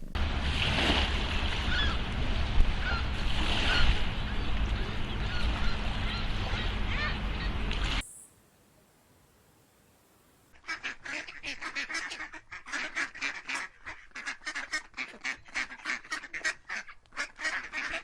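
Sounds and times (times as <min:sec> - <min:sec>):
waterfowl calling: 0:01.6 - 0:08.4, 0:10.5 - 0:18.0.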